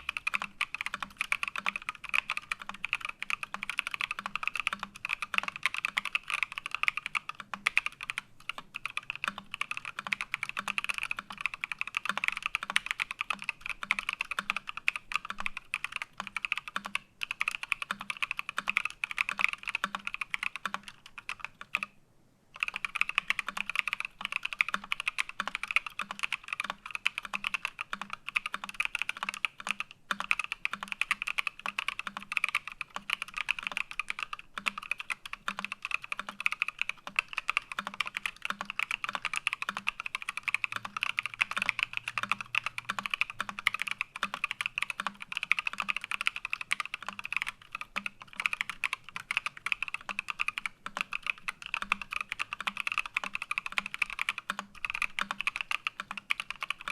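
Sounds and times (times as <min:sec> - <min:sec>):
fast typing on mechanical keyboard: 0:00.0 - 0:21.9, 0:22.6 - 0:56.9.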